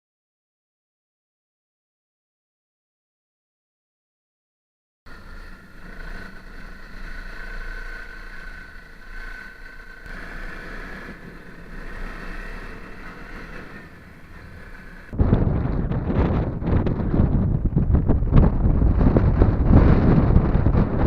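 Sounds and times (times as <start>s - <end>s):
high whine: 5.1s - 21.0s
motorcycle engine running at low revs: 5.1s - 21.0s.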